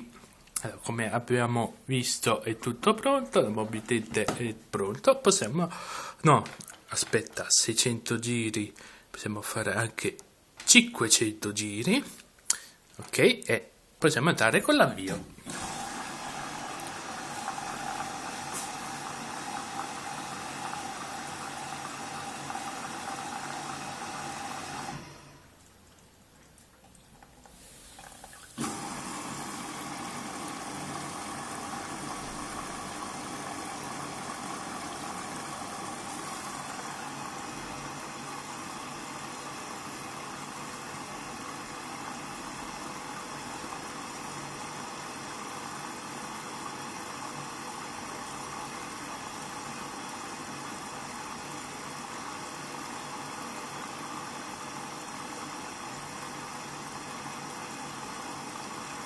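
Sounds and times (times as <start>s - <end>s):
water rushing into washing machine: 15.0s - 59.0s.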